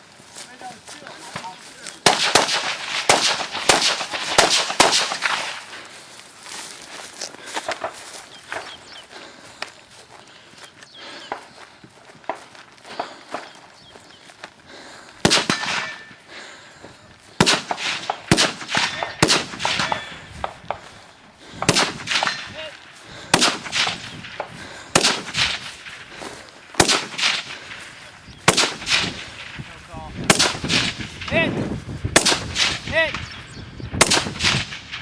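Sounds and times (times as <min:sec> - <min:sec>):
gunshots: 0:01.3 - 0:05.9, 0:15.2 - 0:16.2, 0:17.4 - 0:20.8, 0:21.6 - 0:29.6, 0:30.2 - 0:31.5, 0:32.1 - 0:33.2, 0:34.0 - 0:35.0.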